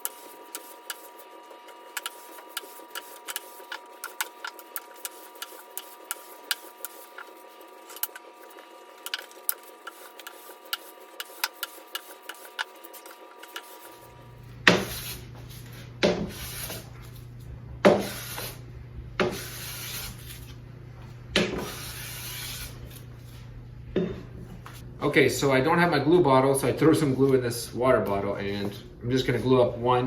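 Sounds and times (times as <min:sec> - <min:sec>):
hand plane scraping wood: 0:00.0 - 0:17.2, 0:17.8 - 0:18.6, 0:19.2 - 0:20.6, 0:21.4 - 0:23.4
low steady hum: 0:12.9 - 0:30.0.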